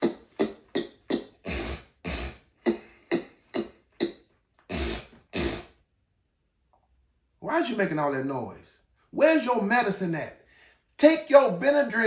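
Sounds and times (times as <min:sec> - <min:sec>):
person sniffling: 0:00.0 - 0:05.7.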